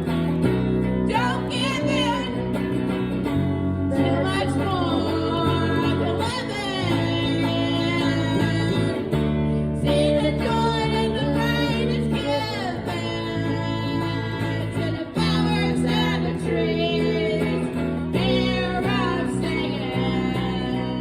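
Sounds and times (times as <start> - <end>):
blues guitar: 0.0 - 21.0
person singing: 3.8 - 21.0.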